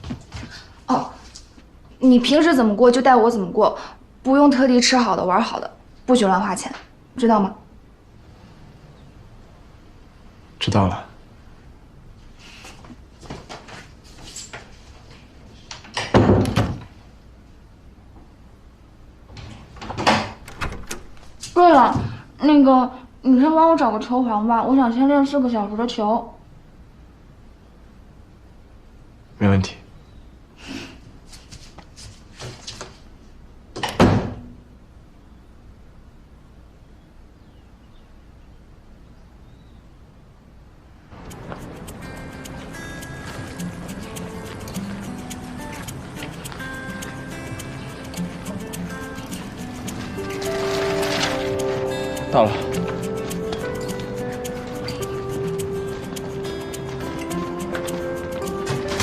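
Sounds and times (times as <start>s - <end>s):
door closing with a thud: 16.0s - 16.9s, 19.4s - 21.3s, 33.8s - 34.5s, 58.6s - 59.0s.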